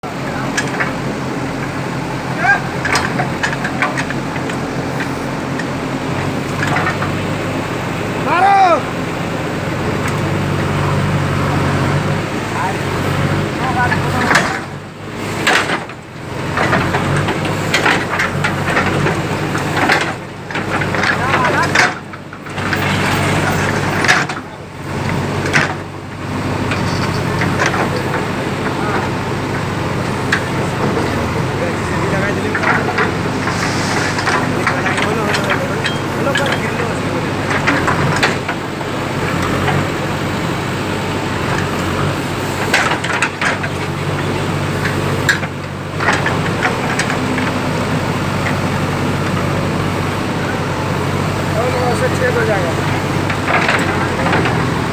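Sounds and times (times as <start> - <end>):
diesel machinery engine running: 0.0 - 54.9
short sharp sounds: 32.8 - 36.1.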